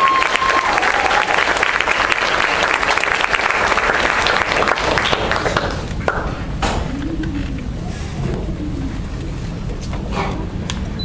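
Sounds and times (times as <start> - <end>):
audience applauding: 0.0 - 6.4.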